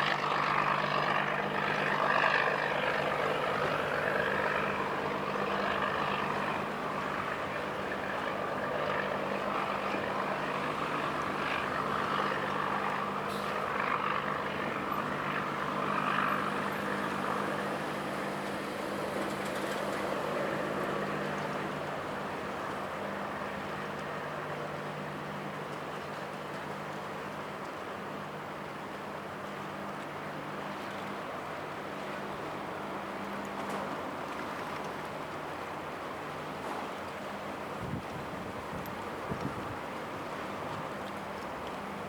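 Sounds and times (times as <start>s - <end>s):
diesel engine droning: 0.0s - 22.8s
choppy water: 0.0s - 42.0s.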